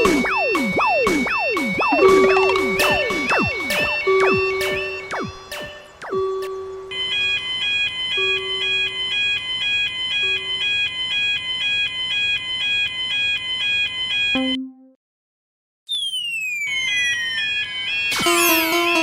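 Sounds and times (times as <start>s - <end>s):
railroad crossing warning bell: 1.6s - 14.4s.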